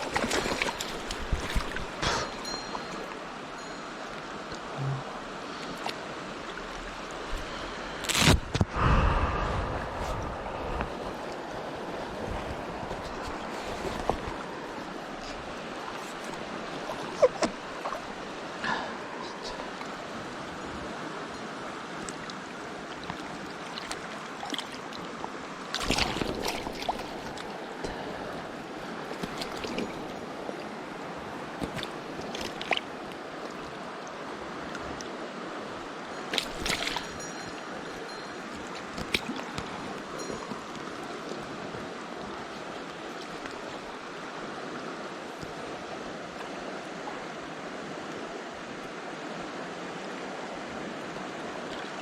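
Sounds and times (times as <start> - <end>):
sharp knocks or splashes: 0.0 - 2.5, 25.8 - 27.2, 36.3 - 37.2
stream water rushing: 0.0 - 52.0.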